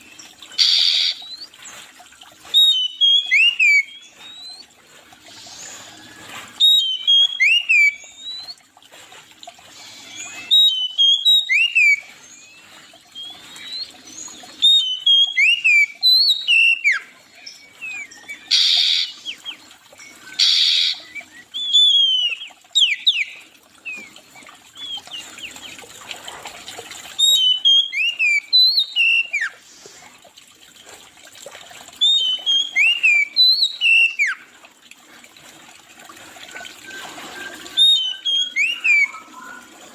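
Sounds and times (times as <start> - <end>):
harsh rasping bird call: 0.6 - 1.3, 20.4 - 21.9
songbird singing: 6.6 - 8.6, 9.9 - 25.8, 36.8 - 39.9.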